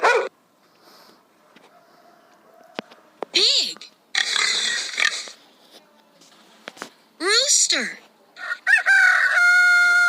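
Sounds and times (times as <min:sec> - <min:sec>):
rooster crowing: 0:01.4 - 0:03.2, 0:08.4 - 0:10.0.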